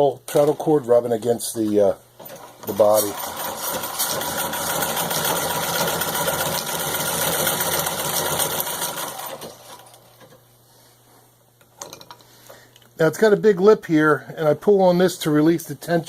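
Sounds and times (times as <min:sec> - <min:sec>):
treadle belt rubbing: 0:02.2 - 0:10.0
treadle sewing machine running: 0:02.2 - 0:10.2.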